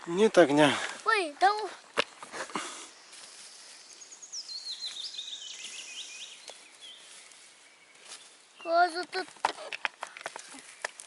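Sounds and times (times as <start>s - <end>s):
small bird chirping: 2.8s - 11.0s.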